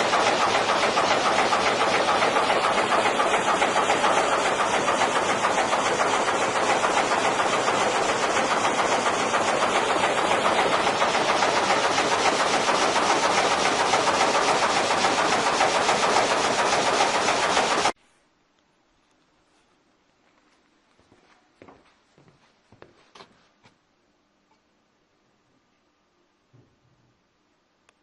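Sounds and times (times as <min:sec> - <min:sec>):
sawmill machinery clattering: 0:00.0 - 0:18.0.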